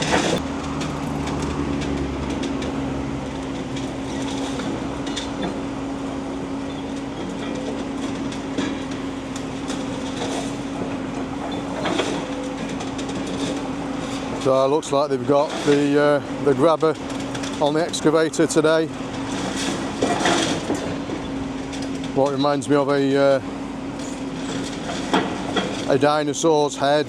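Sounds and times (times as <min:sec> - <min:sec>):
excavator engine hum: 0:00.0 - 0:27.0
metal and debris clanks: 0:19.2 - 0:22.2.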